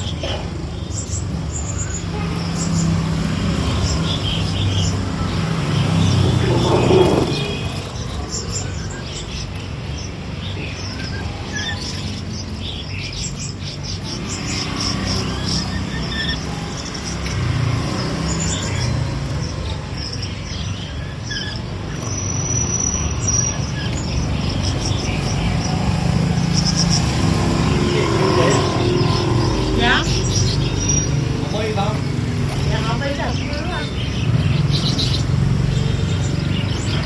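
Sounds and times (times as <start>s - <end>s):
birds chirping and calling: 0.0s - 37.0s.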